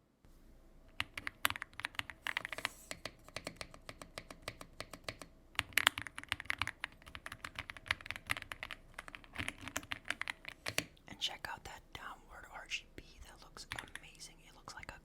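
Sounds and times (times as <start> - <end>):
mechanical keyboard typing: 1.0 - 10.9.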